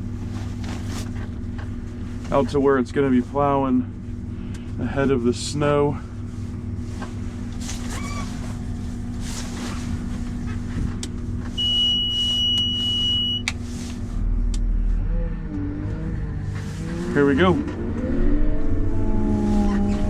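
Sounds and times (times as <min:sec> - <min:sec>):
diesel engine running: 0:00.0 - 0:20.0
high-pitched beep: 0:11.6 - 0:13.4.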